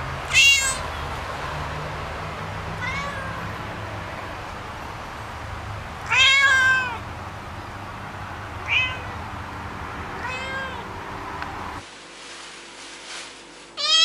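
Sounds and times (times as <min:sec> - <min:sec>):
cat meowing: 0:00.3 - 0:00.9, 0:02.8 - 0:03.5, 0:06.0 - 0:07.0, 0:08.6 - 0:09.2, 0:10.2 - 0:10.9, 0:13.8 - 0:14.0.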